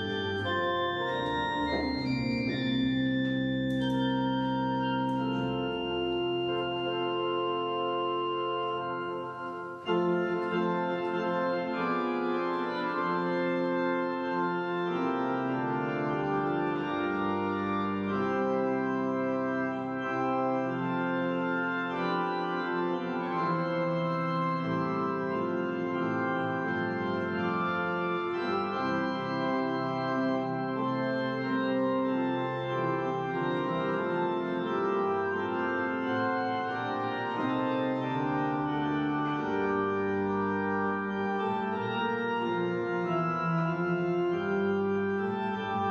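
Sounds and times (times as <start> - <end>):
organ music in slow held chords: 0.0 - 45.9.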